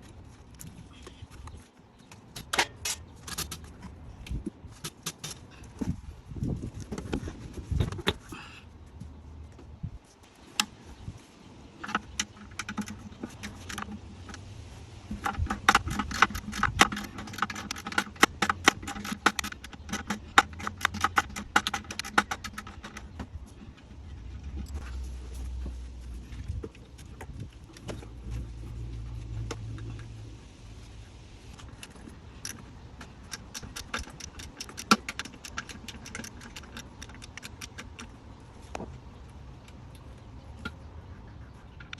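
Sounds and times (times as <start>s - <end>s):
hand tools clicking on metal: 15.2s - 23.4s, 31.6s - 38.2s.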